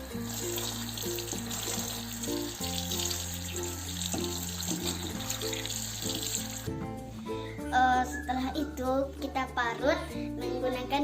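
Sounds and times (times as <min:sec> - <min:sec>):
water running from a tap: 0:00.0 - 0:06.9
background music: 0:00.0 - 0:11.0.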